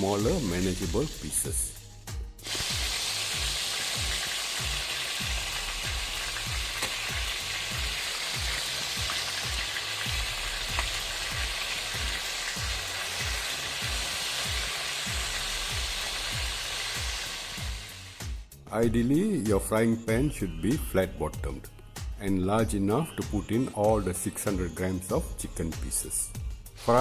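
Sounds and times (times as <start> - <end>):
chicken frying in oil: 0.0 - 1.7, 2.4 - 18.4.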